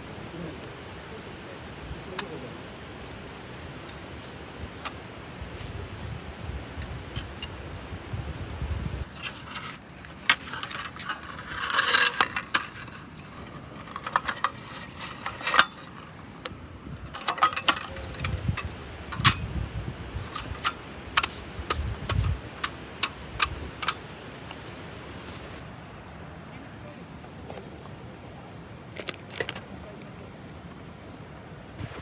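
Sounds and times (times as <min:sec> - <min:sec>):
rustling scrape: 0:01.8 - 0:07.6, 0:08.4 - 0:19.5, 0:20.1 - 0:26.2.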